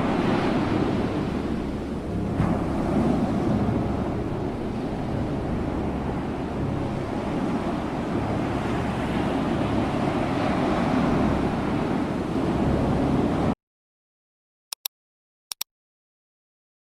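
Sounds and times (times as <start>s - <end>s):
ocean waves washing in: 0.0s - 13.6s.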